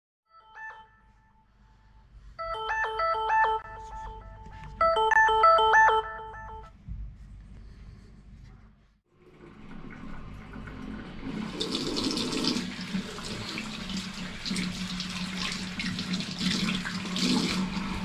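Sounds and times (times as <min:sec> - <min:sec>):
bell-like ringtone melody: 0:00.3 - 0:01.6, 0:02.4 - 0:06.7.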